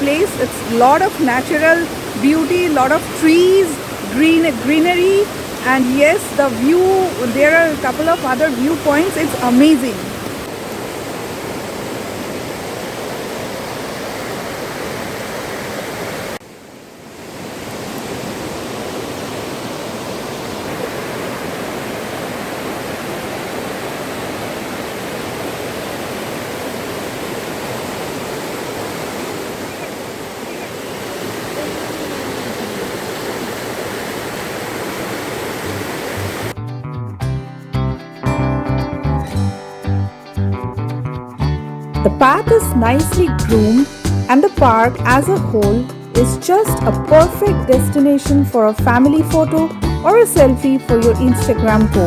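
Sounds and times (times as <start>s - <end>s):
guitar music: 0.0s - 10.2s, 36.6s - 52.0s
waterfall rushing: 0.0s - 36.6s, 42.2s - 47.5s.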